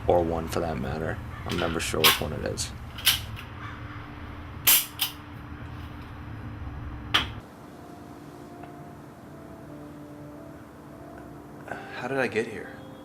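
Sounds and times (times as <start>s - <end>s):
low hum: 2.4s - 11.7s.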